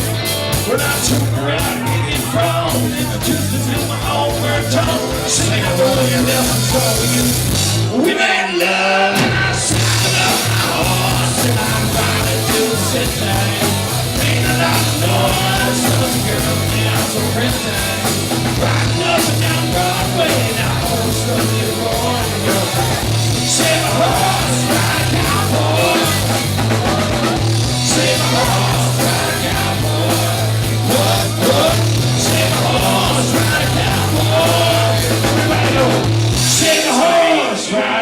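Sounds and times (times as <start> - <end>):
rock band playing live: 0.0 - 38.0
person singing: 0.6 - 38.0.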